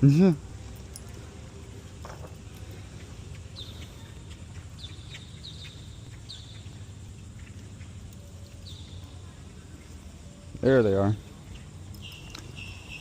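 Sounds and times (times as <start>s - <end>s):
low outdoor rumble: 0.0s - 13.0s
bird high calls: 2.7s - 13.0s.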